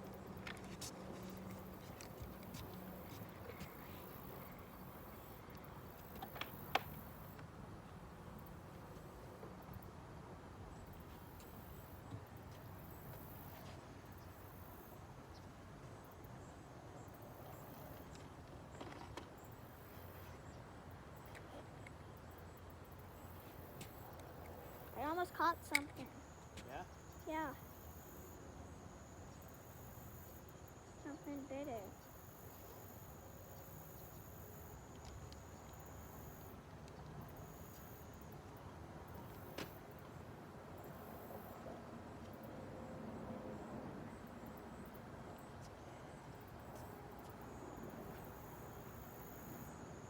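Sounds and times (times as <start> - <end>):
insects chirping: 22.4 - 36.6, 37.2 - 38.4, 46.3 - 50.0.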